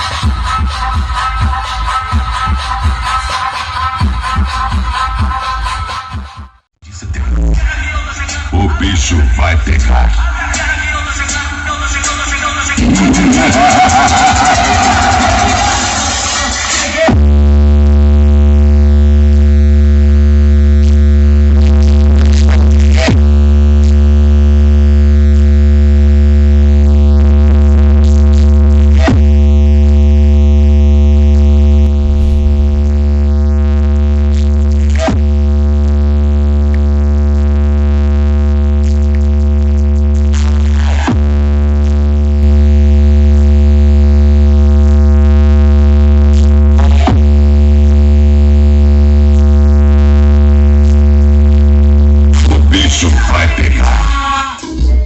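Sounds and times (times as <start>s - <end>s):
deep buzzing synth bass note: 17.2s - 40.4s.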